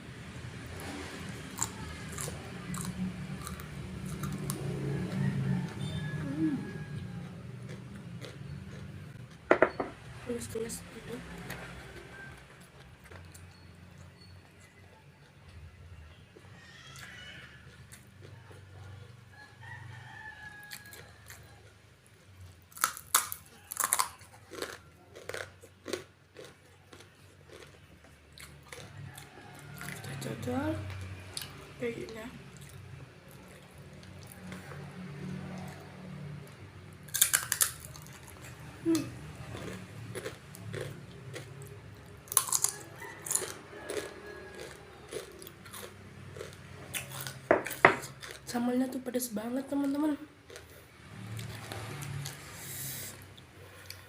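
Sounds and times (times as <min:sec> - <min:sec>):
crunching raw beans: 0:00.8 - 0:09.8, 0:20.6 - 0:30.3, 0:32.5 - 0:48.8, 0:49.8 - 0:54.0.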